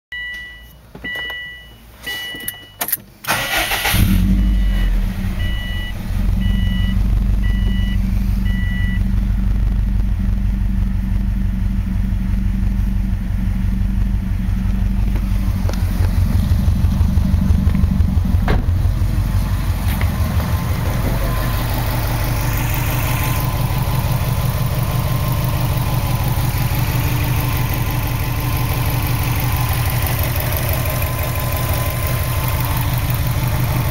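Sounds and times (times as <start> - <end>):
car engine cranking and idling: 0.2 - 33.9
electronic warning chime beeping: 4.4 - 9.0.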